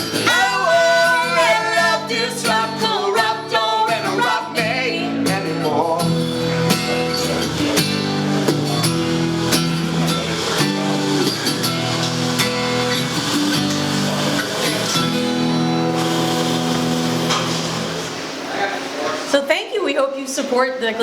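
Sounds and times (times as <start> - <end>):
acoustic guitar playing: 0.0 - 19.6
person singing: 0.2 - 7.8.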